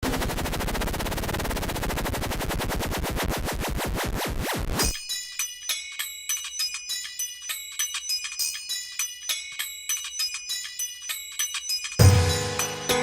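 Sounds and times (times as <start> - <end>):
high chime notes: 8.4 - 13.0
background music: 12.0 - 13.0.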